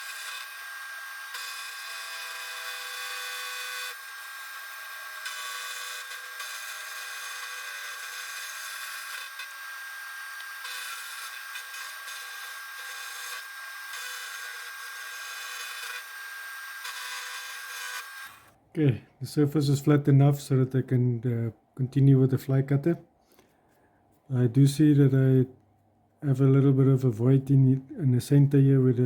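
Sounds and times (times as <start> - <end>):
milling machine cutting metal: 0.0 - 18.4.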